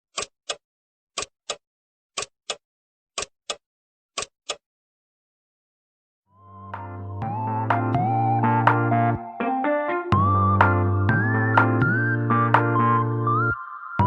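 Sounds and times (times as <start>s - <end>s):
clock-like ticking: 0.1s - 0.6s, 1.2s - 1.6s, 2.2s - 2.6s, 3.2s - 3.6s, 4.2s - 4.6s
music: 6.3s - 14.0s.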